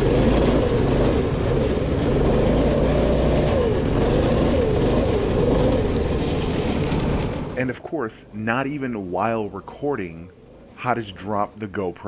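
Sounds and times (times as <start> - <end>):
car engine revving: 0.0 - 7.6.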